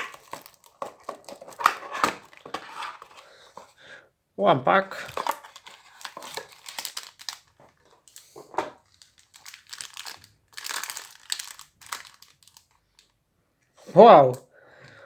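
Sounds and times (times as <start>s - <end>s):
wrapper tearing and crinkling: 0.0s - 3.0s, 5.0s - 13.1s.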